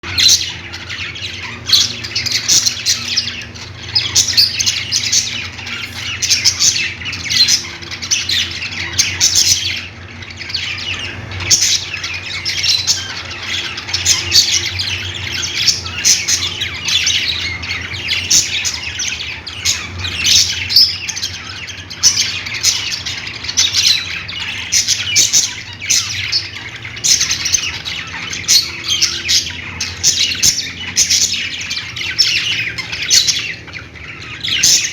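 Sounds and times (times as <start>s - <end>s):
budgerigars chirping and squawking: 0.0s - 34.9s
steady low hum: 0.0s - 34.9s.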